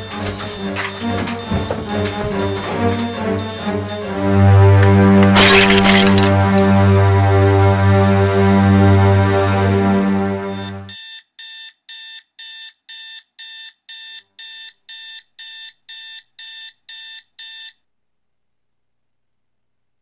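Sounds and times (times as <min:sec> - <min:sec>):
alarm clock beeping: 0:00.0 - 0:05.4, 0:10.4 - 0:17.7.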